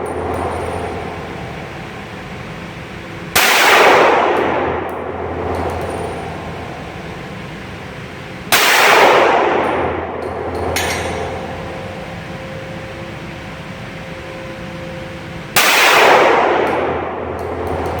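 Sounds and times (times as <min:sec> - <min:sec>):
pistol shots: 0:03.3 - 0:05.2, 0:08.5 - 0:10.1, 0:15.6 - 0:17.9.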